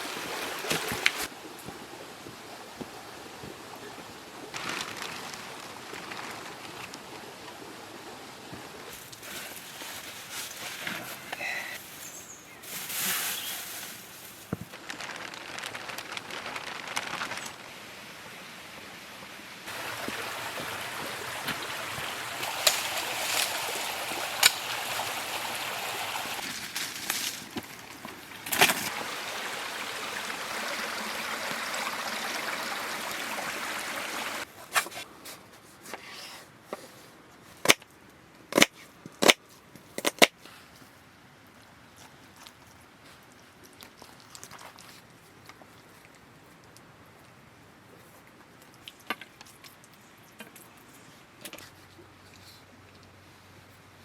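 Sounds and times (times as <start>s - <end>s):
stream flowing: 0.0s - 4.6s, 17.6s - 26.8s, 27.4s - 34.5s.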